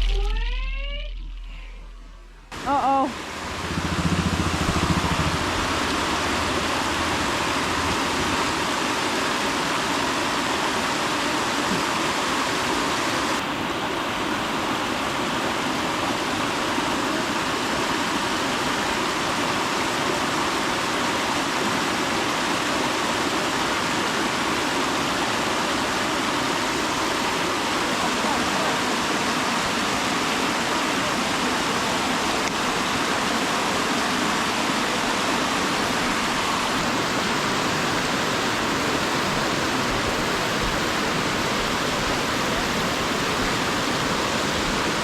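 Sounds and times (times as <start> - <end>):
brief loud pitched sound: 0.0 - 2.5
low hum: 0.0 - 8.8
river water rushing: 2.5 - 45.0.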